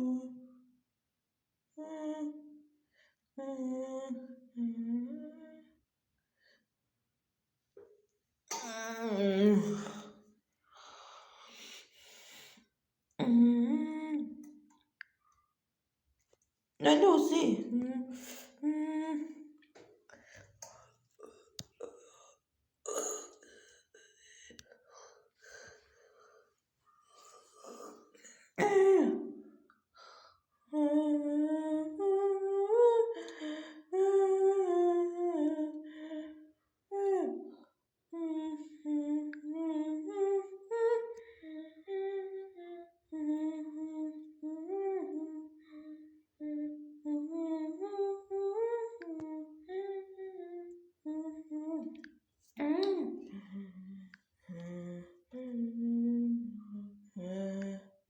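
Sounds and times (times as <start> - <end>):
person humming a tune: 13.2 - 14.4, 52.7 - 58.0.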